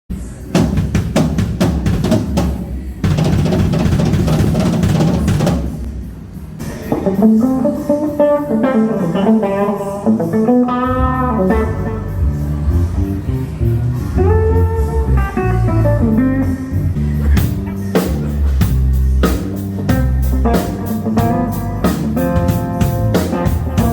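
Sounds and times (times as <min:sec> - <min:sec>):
drum hits: 0:00.5 - 0:06.0, 0:17.4 - 0:23.9
electric guitar bending notes: 0:06.9 - 0:23.9.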